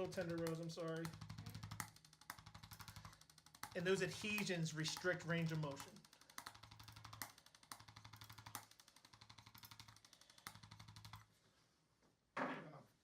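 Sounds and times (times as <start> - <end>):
adjusting instrument rapid ticking: 0.0 - 11.3.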